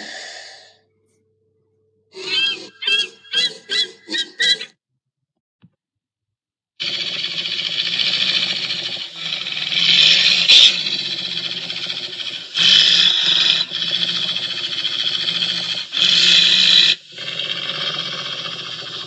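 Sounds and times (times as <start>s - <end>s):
monster growling: 6.8s - 19.0s.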